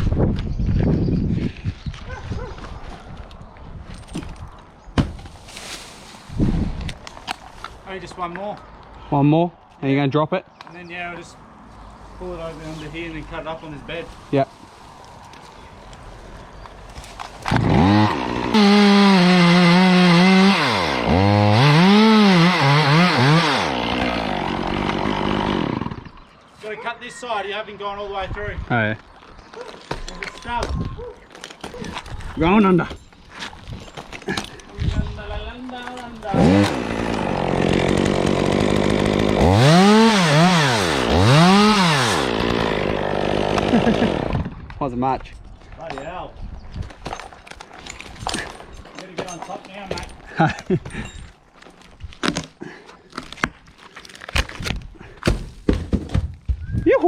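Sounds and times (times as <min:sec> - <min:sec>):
chainsaw revving: 0:17.5 - 0:26.2, 0:36.3 - 0:44.5.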